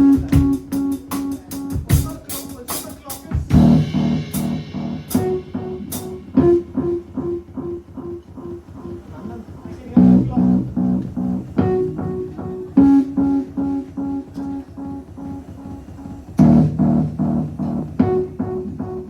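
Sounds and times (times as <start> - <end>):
drum and cymbal hits: 0.0 - 19.0
bass plucking repeated notes: 3.5 - 9.0, 10.0 - 19.0.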